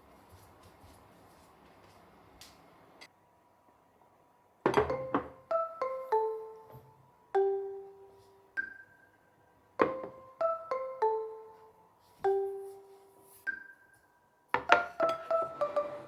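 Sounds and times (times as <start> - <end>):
soft mallet percussion melody: 4.7 - 16.0.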